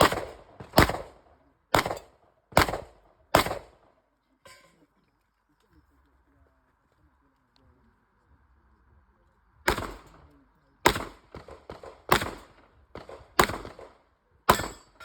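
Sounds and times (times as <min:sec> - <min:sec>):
fainter gunshots: 0:00.0 - 0:03.8, 0:09.7 - 0:14.9
loud gunshots: 0:00.0 - 0:03.8, 0:09.7 - 0:10.2, 0:10.8 - 0:15.0.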